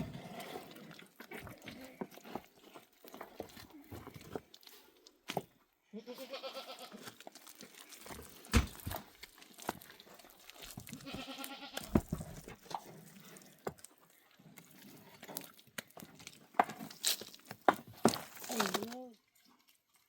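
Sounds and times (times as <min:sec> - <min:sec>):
goat bleating: 0:05.9 - 0:07.0, 0:10.9 - 0:11.9.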